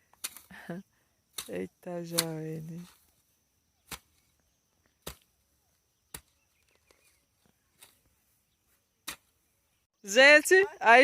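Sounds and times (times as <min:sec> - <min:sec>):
hoe chopping into mud: 0:03.8 - 0:04.2, 0:05.0 - 0:05.3, 0:06.1 - 0:06.4.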